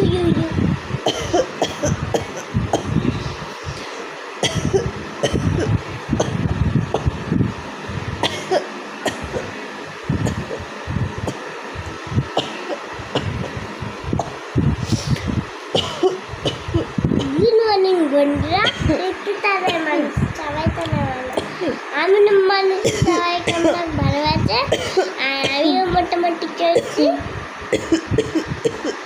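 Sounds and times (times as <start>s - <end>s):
woman coughing: 1.1s - 2.9s, 4.4s - 6.4s, 8.2s - 9.5s, 15.8s - 17.4s, 22.8s - 23.8s, 24.7s - 25.2s, 26.8s - 29.0s
woman clearing her throat: 27.8s - 29.0s.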